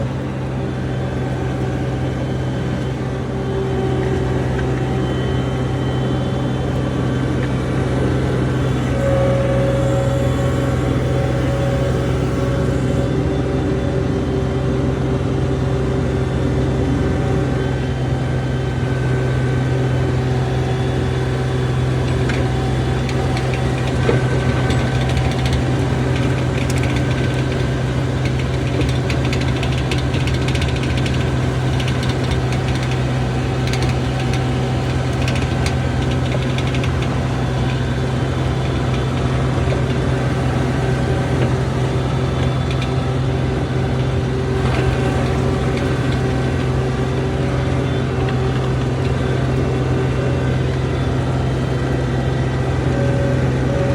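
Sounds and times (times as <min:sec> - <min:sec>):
diesel engine running: 0:00.0 - 0:53.9
light rattles and clicks: 0:22.0 - 0:43.3.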